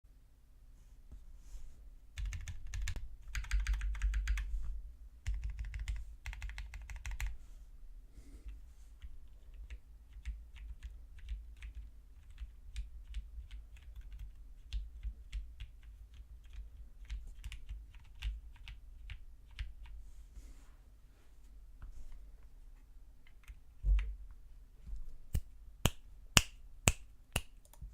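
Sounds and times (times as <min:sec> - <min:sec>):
mechanical keyboard typing: 0:02.2 - 0:04.5, 0:05.2 - 0:07.3, 0:09.3 - 0:19.9.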